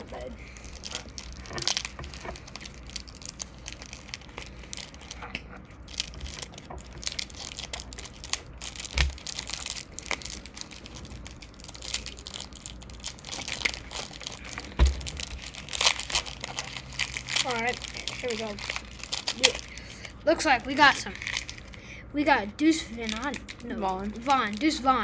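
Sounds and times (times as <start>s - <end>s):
card pack wrapper crinkling: 0.0s - 21.8s, 23.0s - 25.0s
soft thump: 14.7s - 15.5s.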